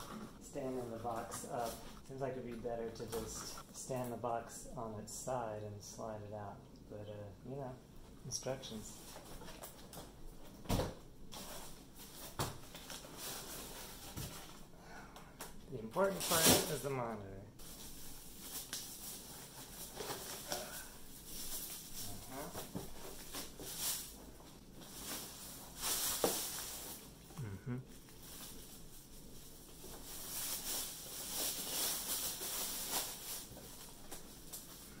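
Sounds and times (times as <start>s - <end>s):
packaging rustling and scraping: 11.3s - 14.7s, 16.0s - 16.8s, 17.6s - 27.2s, 28.0s - 35.0s.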